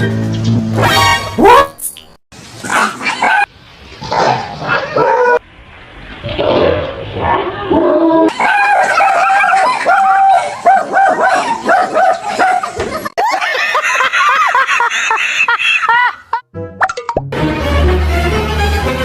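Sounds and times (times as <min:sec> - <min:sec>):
dog yipping and barking: 0:00.8 - 0:02.0, 0:02.8 - 0:03.5, 0:04.8 - 0:05.4, 0:08.3 - 0:12.8.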